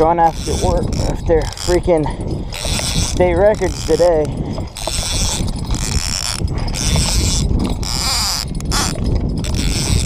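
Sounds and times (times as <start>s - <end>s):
wind rumbling on microphone: 0.0s - 10.0s
man breathing hard: 4.3s - 4.9s, 6.5s - 6.9s.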